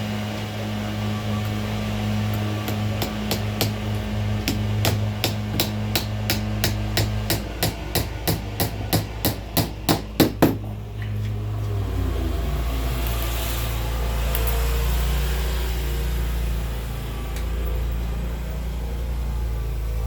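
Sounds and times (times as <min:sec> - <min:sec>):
hammer tapping nail: 0:02.3 - 0:10.6.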